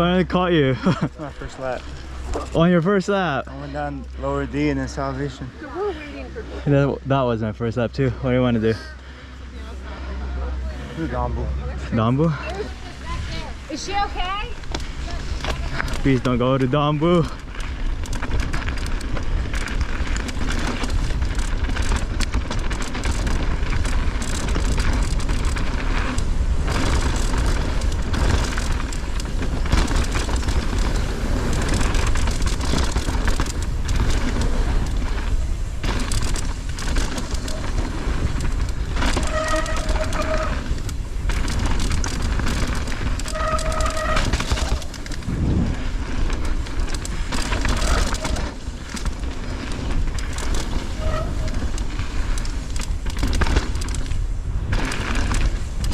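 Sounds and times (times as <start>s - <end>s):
bike rattling over bumps: 0.0s - 55.9s
tyres on dirt: 0.0s - 55.9s
wind buffeting microphone: 12.4s - 55.9s.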